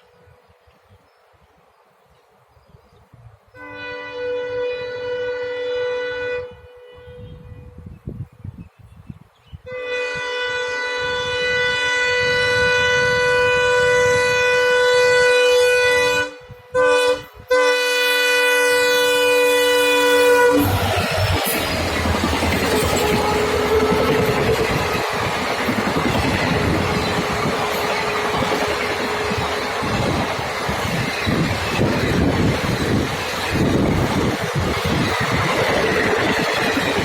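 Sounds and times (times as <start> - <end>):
train horn blasts: 3.5 - 7.9, 9.6 - 31.0
rush of train passing: 17.2 - 37.0.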